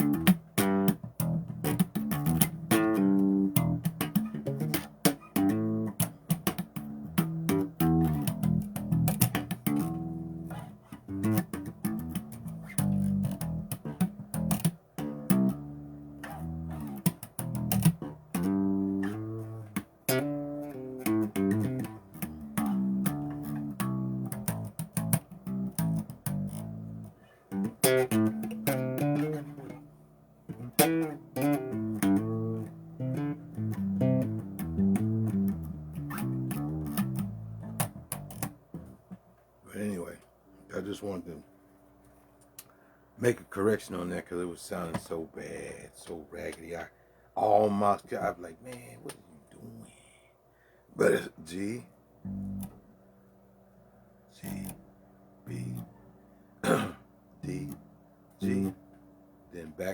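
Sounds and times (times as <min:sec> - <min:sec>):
bass guitar riff: 0:00.0 - 0:29.9, 0:30.5 - 0:39.2, 0:51.0 - 0:52.9, 0:54.3 - 0:56.0, 0:56.6 - 0:58.9.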